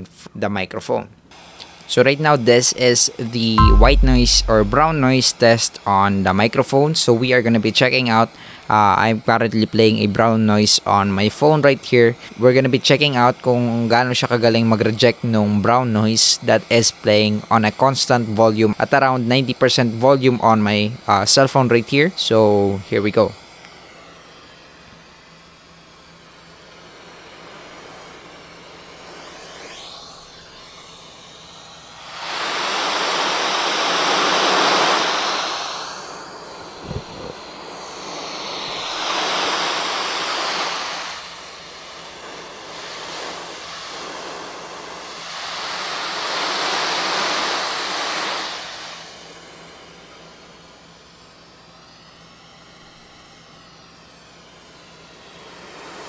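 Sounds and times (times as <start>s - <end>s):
brown noise hiss: 0.0s - 56.0s
short low thump: 3.6s - 5.1s.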